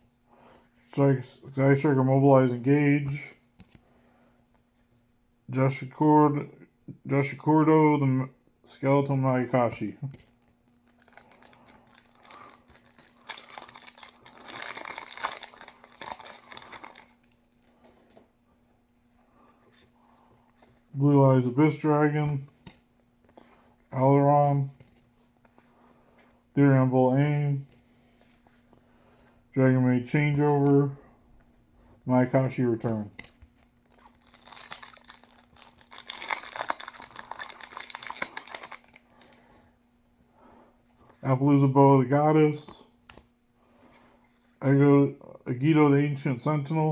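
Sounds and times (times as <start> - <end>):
faint steady hum: 0.0 - 46.9
card handling: 9.8 - 18.3, 32.9 - 39.5
foil wrapper crinkling: 10.7 - 17.6, 33.2 - 39.5.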